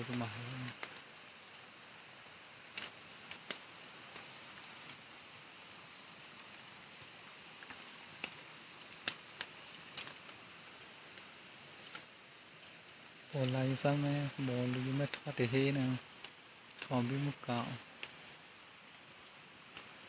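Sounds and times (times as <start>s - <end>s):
outdoor background hiss: 0.0s - 20.0s
sharp clicks and snaps: 2.7s - 5.0s, 7.6s - 10.4s, 19.2s - 20.0s.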